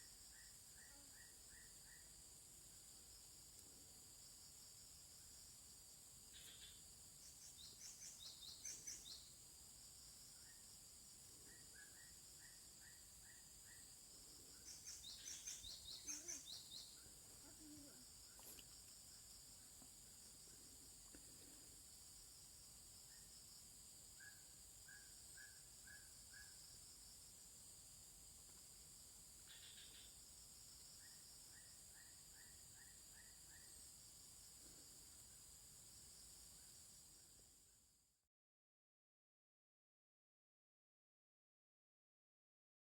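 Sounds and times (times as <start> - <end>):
high insect drone: 0.0 - 38.2
bird chirping: 6.3 - 9.3, 11.5 - 18.4, 29.5 - 30.2
high twittering chirps: 14.6 - 17.9.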